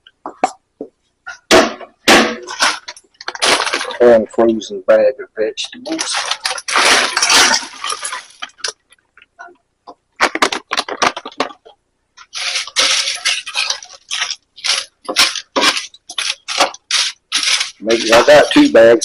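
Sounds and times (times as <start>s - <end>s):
frozen vegetables clattering into pot: 2.1s - 4.2s, 5.9s - 8.9s, 10.2s - 19.0s
plastic bag crinkling: 2.4s - 4.2s, 5.8s - 9.0s, 10.2s - 19.0s.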